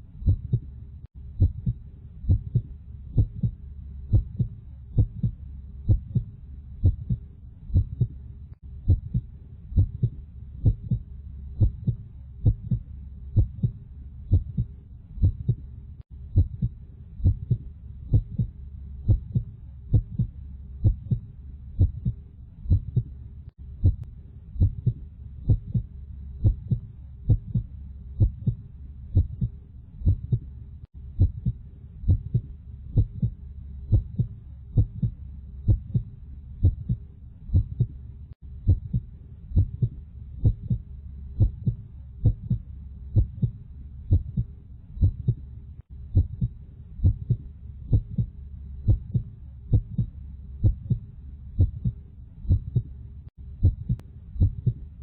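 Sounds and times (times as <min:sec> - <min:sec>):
low steady hum: 0:00.0 - 0:55.0
heartbeat thumps: 0:00.1 - 0:30.5, 0:31.1 - 0:38.0, 0:38.6 - 0:55.0.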